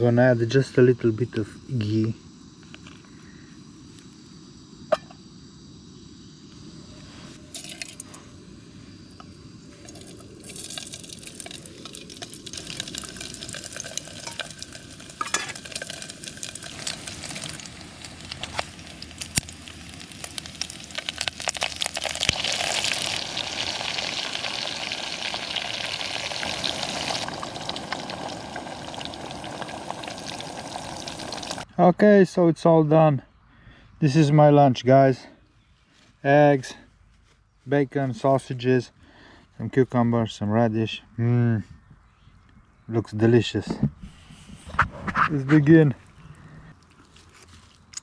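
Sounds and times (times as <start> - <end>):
food sizzling in pot: 7.1 - 8.3, 9.3 - 31.7.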